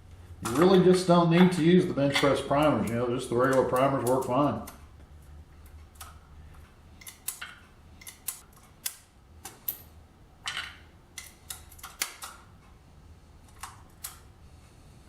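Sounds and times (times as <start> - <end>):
metallic clicks and clinks: 7.0 - 12.4.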